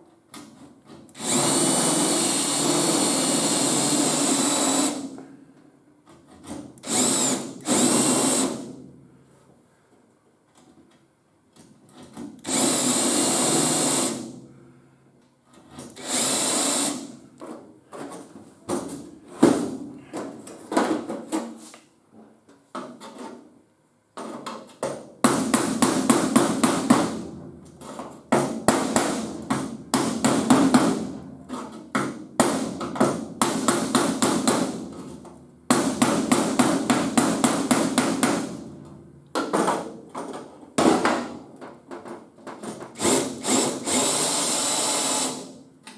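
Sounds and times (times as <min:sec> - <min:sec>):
power tools on sheet metal: 0:01.2 - 0:05.0, 0:06.8 - 0:08.7, 0:12.5 - 0:14.3, 0:43.0 - 0:45.5.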